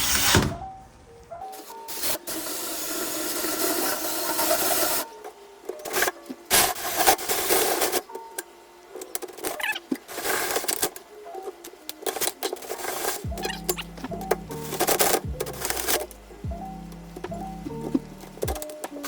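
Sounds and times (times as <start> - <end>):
power drill cutting wood: 0.0 - 0.5.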